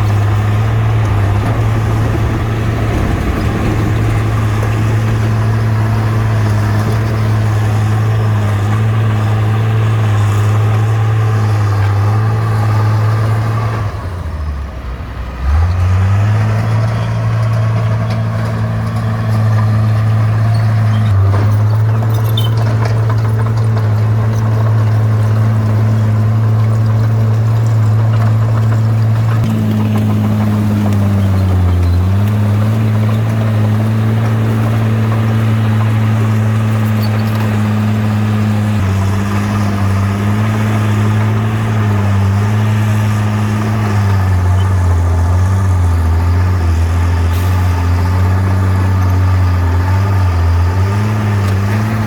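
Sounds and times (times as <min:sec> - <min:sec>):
bulldozer diesel engine running: 0:00.0 - 0:52.0.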